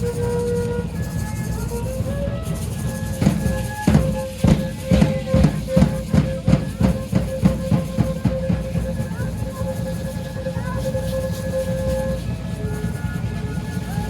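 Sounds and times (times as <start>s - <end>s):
drum strokes: 1.8s - 11.8s.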